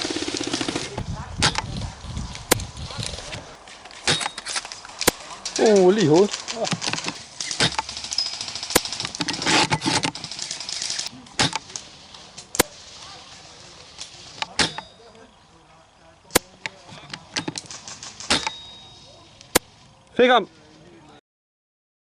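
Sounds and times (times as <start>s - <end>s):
airsoft guns firing: 0.0s - 1.8s, 4.0s - 13.3s, 16.3s - 19.8s.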